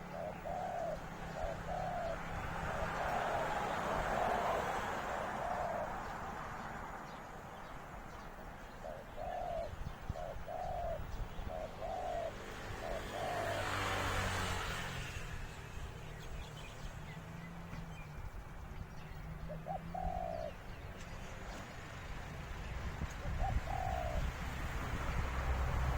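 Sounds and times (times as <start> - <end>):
dove cooing: 0.0 - 6.7, 8.6 - 14.1, 19.4 - 20.8, 23.1 - 24.4.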